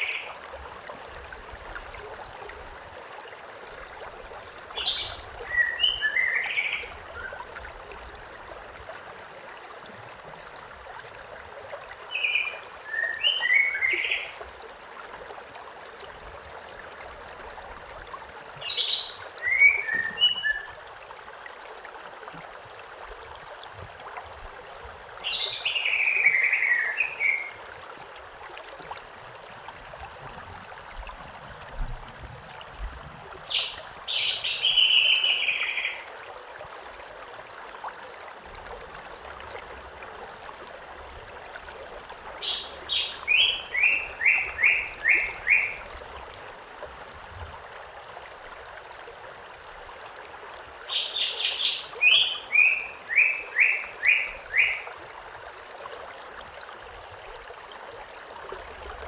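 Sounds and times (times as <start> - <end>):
stream flowing: 0.0 - 59.0
songbird singing: 4.7 - 7.4, 12.1 - 14.4, 18.6 - 20.8, 25.2 - 27.6, 33.5 - 36.1, 42.4 - 45.9, 50.9 - 54.9.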